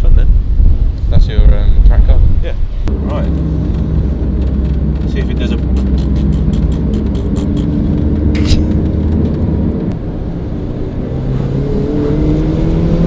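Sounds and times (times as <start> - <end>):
car engine revving: 2.9 - 13.0
sharp click: 8.4 - 9.0.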